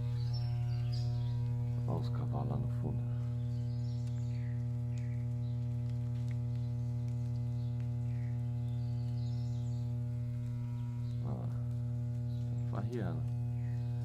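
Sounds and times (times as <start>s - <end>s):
faint bird calls chirping: 0.0s - 5.8s, 6.5s - 14.0s
steady low hum: 0.0s - 14.0s.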